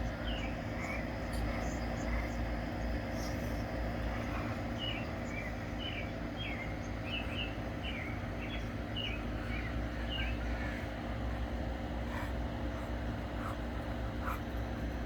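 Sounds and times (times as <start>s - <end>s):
steady low hum: 0.0s - 15.0s
bird chirping: 4.2s - 10.8s.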